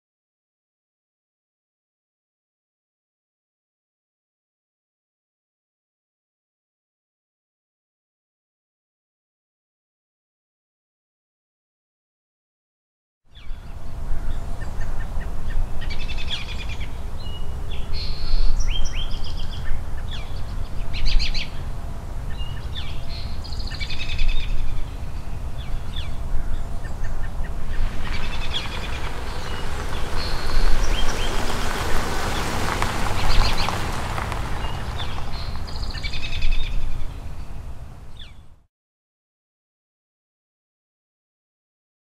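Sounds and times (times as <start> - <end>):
birds chirping and trilling: 13.4 - 38.6
low outdoor rumble: 13.5 - 38.4.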